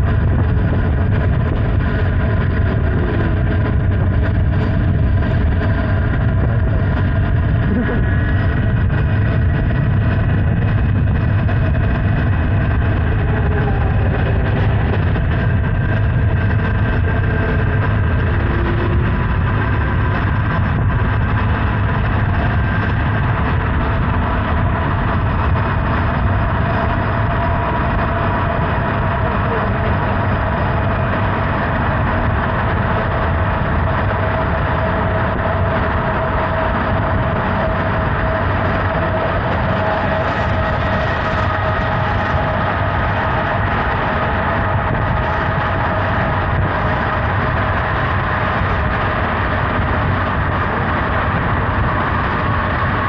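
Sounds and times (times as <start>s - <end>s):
motorcycle engine running steadily: 0.0s - 53.0s
road noise rushing: 0.0s - 53.0s.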